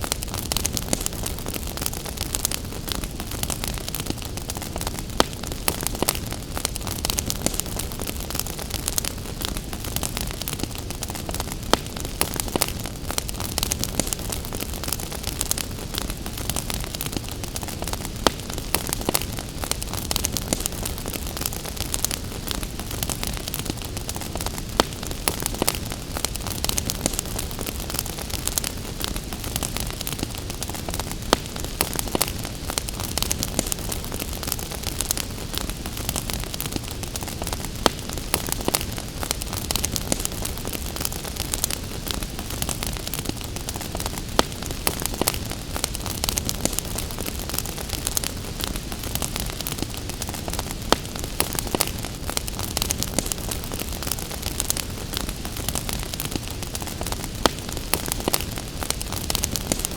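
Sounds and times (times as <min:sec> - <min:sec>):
gentle rain: 0:00.0 - 0:59.9
wood fire crackling and popping: 0:00.0 - 0:59.9.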